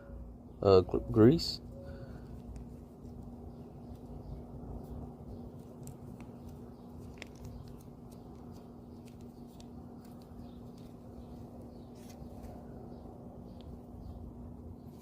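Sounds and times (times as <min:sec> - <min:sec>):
steady low hum: 0:00.0 - 0:15.0
faint clicks and handling noises: 0:02.2 - 0:04.1, 0:05.6 - 0:12.6.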